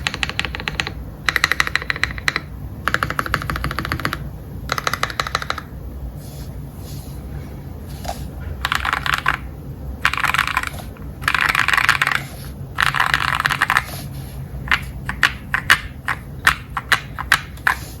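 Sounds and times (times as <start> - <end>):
mechanical keyboard typing: 0.0 - 5.7, 8.6 - 14.0, 14.7 - 17.9.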